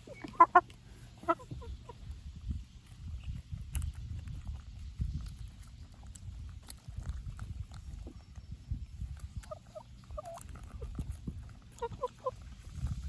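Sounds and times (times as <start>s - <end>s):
chickens clucking: 0.0s - 2.9s, 9.2s - 12.9s.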